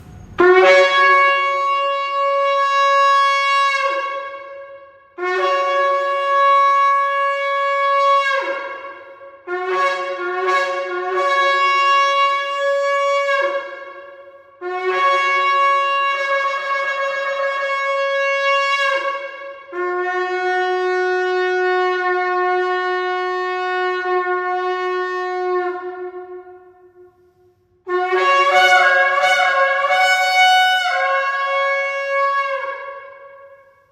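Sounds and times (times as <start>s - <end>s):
shofar blasts: 0.0s - 33.9s.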